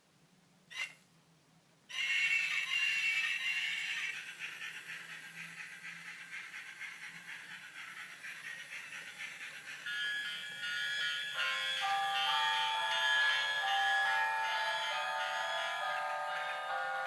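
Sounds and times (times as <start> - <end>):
tinny electronic tune: 9.9 - 17.0
high electronic bell ringing: 10.0 - 17.0.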